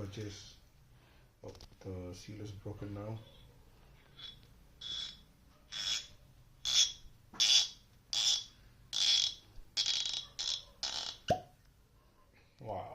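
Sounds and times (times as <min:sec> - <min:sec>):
cork squeaking in bottle neck: 0:04.1 - 0:11.6.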